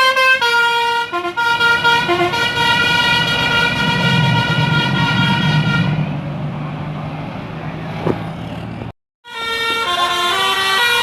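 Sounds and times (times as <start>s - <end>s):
musical bus horn tune: 0.0s - 6.0s, 9.2s - 11.0s
bus engine rumbling: 0.0s - 11.0s.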